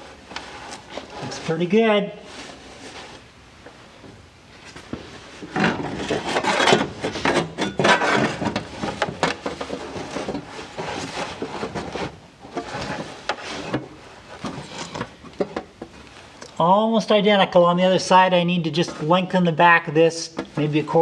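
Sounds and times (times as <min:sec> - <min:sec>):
metal panel scraping and rubbing: 0:05.5 - 0:13.8.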